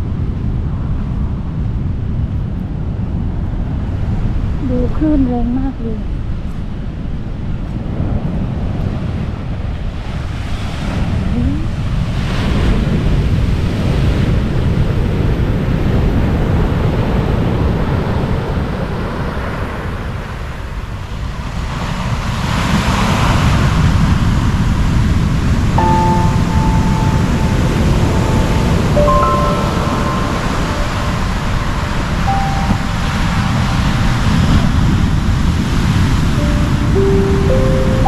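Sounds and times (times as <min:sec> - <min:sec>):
wind rumbling on microphone: 0:00.0 - 0:29.0
waves breaking and washing in: 0:06.1 - 0:38.0.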